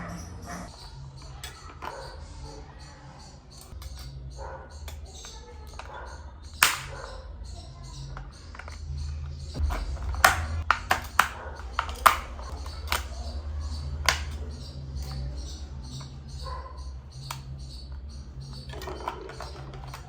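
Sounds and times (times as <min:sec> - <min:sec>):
steady low hum: 0:00.0 - 0:00.8, 0:06.2 - 0:18.8
sharp clicks and knocks: 0:03.5 - 0:07.2, 0:08.0 - 0:20.0.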